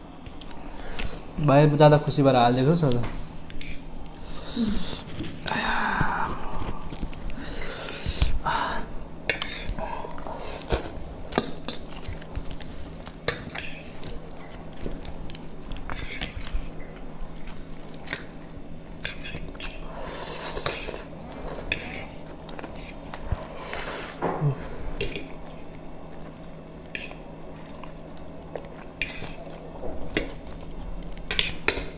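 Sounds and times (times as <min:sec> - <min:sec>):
people chewing food: 0:00.0 - 0:01.4, 0:02.6 - 0:31.9.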